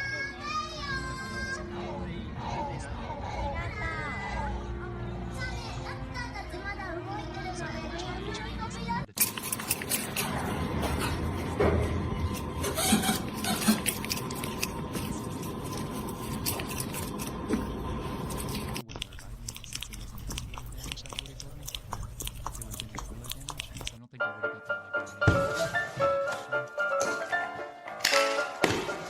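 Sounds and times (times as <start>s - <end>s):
chewing and crunching: 9.1s - 24.1s.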